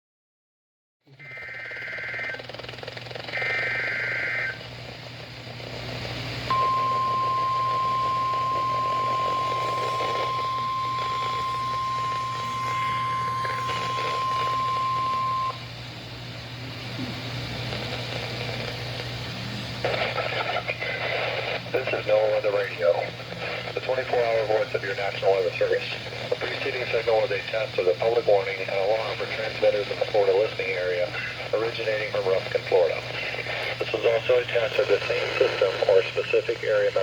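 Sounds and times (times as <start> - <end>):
radio hiss: 1.1 - 37.0
steady low hum: 1.1 - 37.0
data header tone bursts: 6.5 - 15.6
weather alert tone: 6.5 - 15.6.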